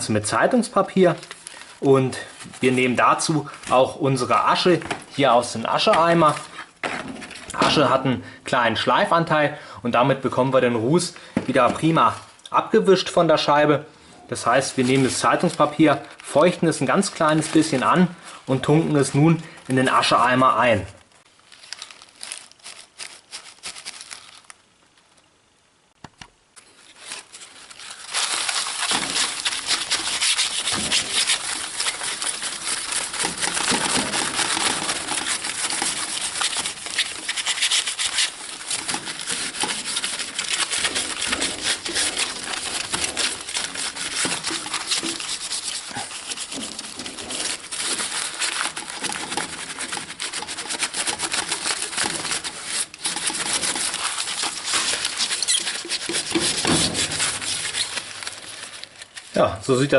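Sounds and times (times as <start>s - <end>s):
newspaper scrubbing glass: 0.0s - 9.4s, 14.2s - 20.8s, 26.7s - 59.4s
paper crinkling: 0.0s - 9.4s, 14.1s - 25.3s, 26.0s - 59.9s.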